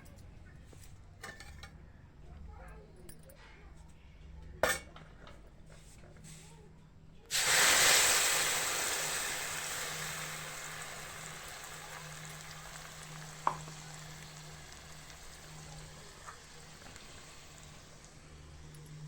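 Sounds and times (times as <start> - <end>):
food sizzling in hot oil: 7.3 - 19.0.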